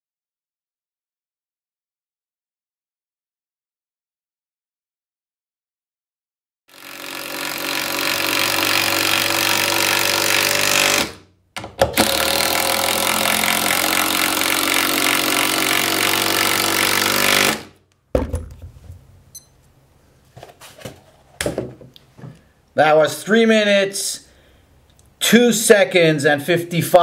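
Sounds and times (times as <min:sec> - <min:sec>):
impact driver hammering: 0:06.7 - 0:18.6
knocks: 0:18.1 - 0:18.8.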